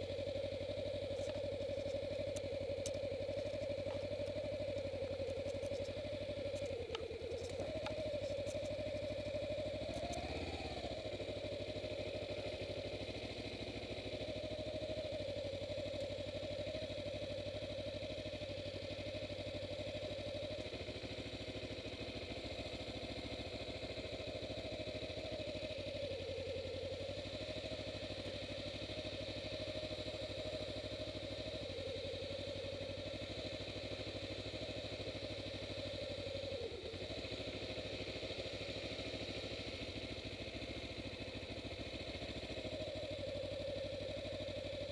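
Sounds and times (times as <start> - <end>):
motorcycle engine running: 0.0 - 44.9.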